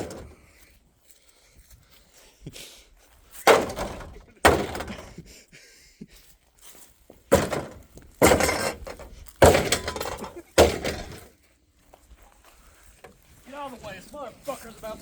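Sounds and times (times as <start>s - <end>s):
heavy blows smashing refrigerator: 0.0s - 0.4s, 3.4s - 5.2s, 7.3s - 11.3s.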